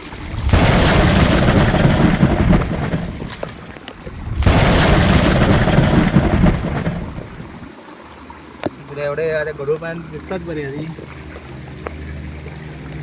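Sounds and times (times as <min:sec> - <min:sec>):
thunder crashing and rumbling: 0:00.0 - 0:07.7.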